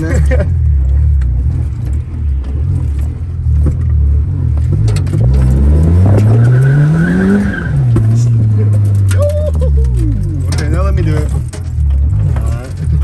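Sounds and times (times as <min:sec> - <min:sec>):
car engine revving: 0:00.0 - 0:13.0
tire squeal: 0:06.1 - 0:08.4.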